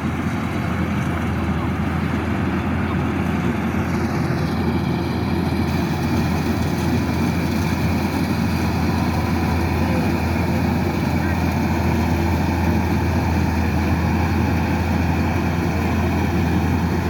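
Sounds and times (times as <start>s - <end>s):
combine harvester diesel engine drone: 0.0s - 17.0s.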